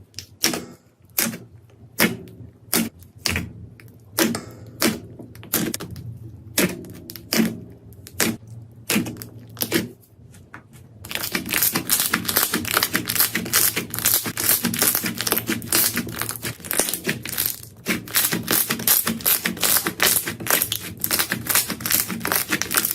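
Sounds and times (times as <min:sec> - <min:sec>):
slime crackling: 0:01.9 - 0:22.9
slime squeezed by hand: 0:11.1 - 0:22.9.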